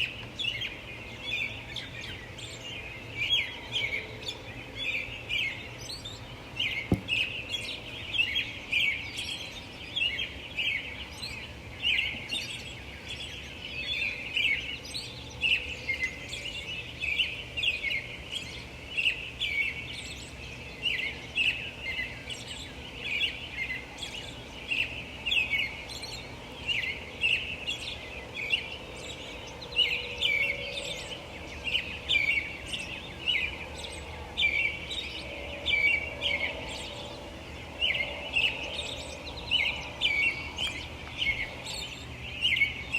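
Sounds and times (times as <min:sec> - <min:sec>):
birds chirping and twittering: 0:00.0 - 0:42.9
distant traffic hum: 0:00.0 - 0:42.9
short thump: 0:06.9 - 0:07.2.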